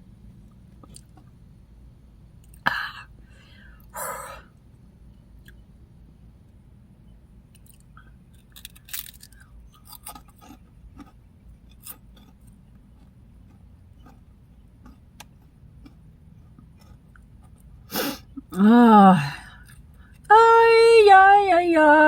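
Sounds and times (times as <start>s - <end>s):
crunching and chewing snack: 0.5s - 1.3s, 7.5s - 18.4s.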